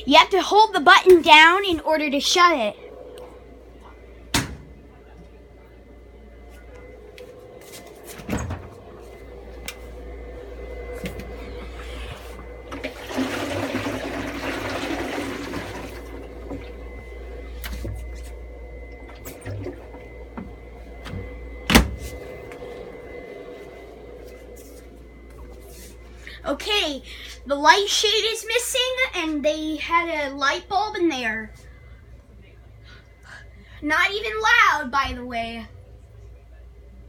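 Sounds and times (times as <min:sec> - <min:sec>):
garage door opener humming: 0:01.0 - 0:26.4.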